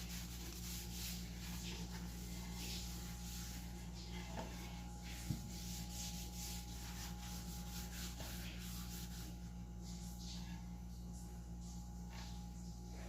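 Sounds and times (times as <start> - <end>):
sandpaper rubbing on wood: 0.0 - 3.8, 5.0 - 9.4.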